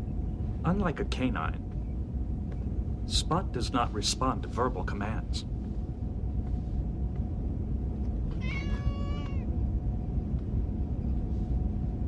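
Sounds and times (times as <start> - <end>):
low hum: 0.0 - 12.0
cat meowing: 8.3 - 9.5.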